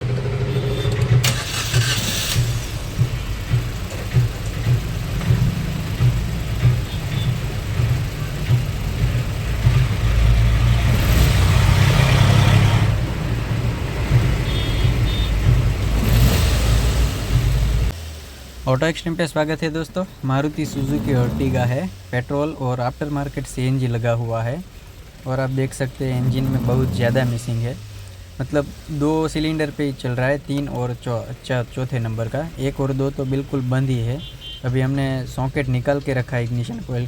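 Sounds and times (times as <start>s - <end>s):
car engine idling roughly: 0.7s - 11.2s.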